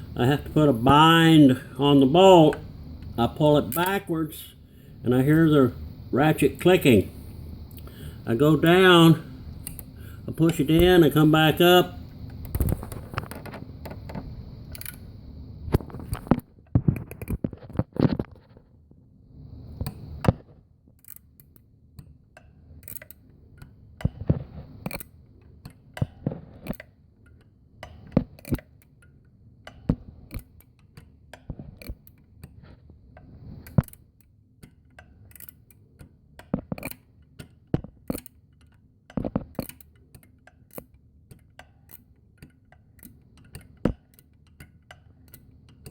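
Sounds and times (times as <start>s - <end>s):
ratchet wrench clicking: 14.7s - 15.0s, 21.0s - 24.2s, 24.8s - 32.6s, 33.6s - 38.8s, 39.5s - 45.9s.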